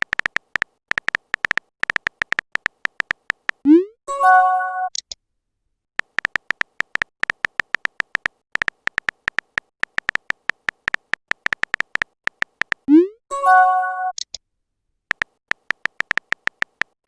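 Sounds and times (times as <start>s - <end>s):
smartphone keyboard taps: 0.0s - 3.6s, 6.0s - 12.9s, 15.1s - 17.0s.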